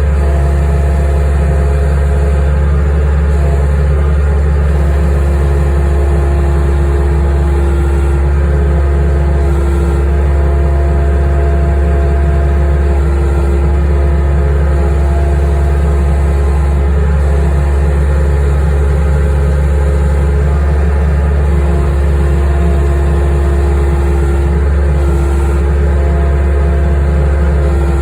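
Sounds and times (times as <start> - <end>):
skid steer engine running: 0.0 - 28.0
steady whine: 0.0 - 28.0.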